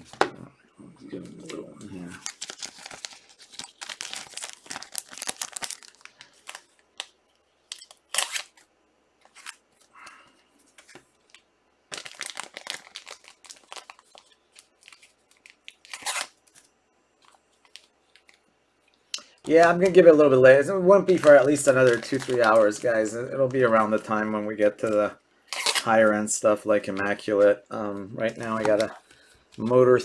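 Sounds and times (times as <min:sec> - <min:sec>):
card pack wrappers crinkling: 0:01.2 - 0:09.9, 0:10.7 - 0:18.4, 0:19.5 - 0:26.2, 0:26.8 - 0:30.0.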